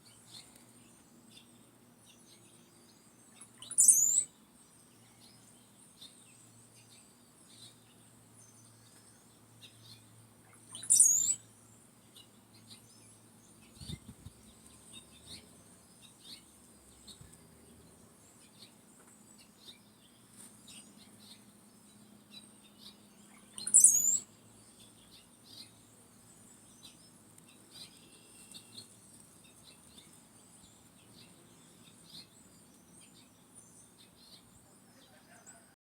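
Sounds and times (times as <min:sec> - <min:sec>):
birds chirping faintly: 0:00.0 - 0:35.8
bird high-pitched phrase: 0:23.3 - 0:24.3.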